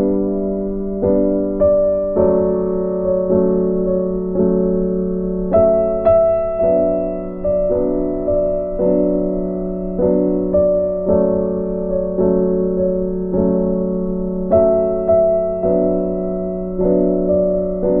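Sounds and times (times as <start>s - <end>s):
gentle electric piano melody: 0.0s - 18.0s.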